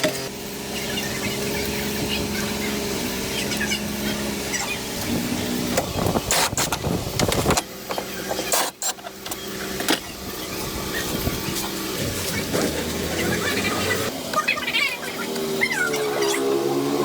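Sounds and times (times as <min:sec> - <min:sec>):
car engine running: 0:00.0 - 0:17.0.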